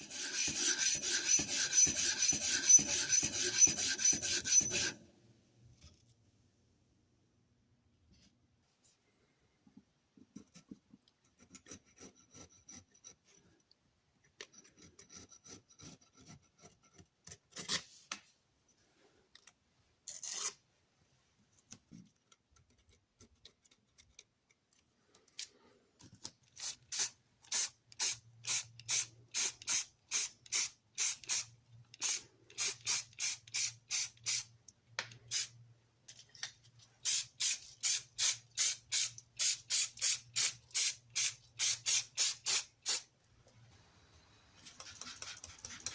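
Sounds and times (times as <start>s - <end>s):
metal rasping on sandpaper: 0.0s - 5.0s, 44.6s - 45.9s.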